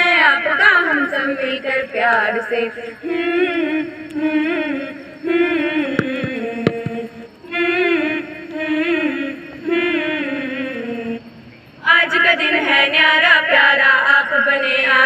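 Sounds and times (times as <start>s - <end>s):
students singing together: 3.0s - 11.3s, 11.9s - 15.0s
sharp taps: 6.0s - 7.1s.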